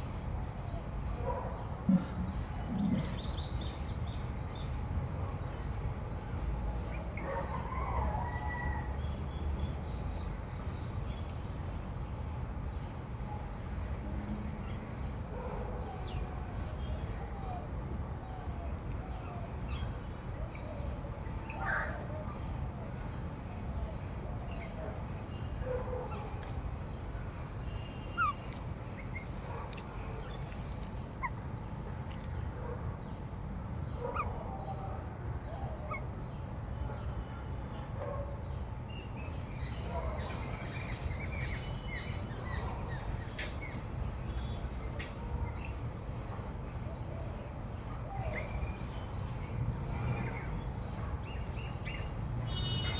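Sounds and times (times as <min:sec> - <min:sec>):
high-pitched insect drone: 0:15.8 - 0:46.3, 0:47.4 - 0:52.9
bird calls and chirps: 0:27.6 - 0:31.4.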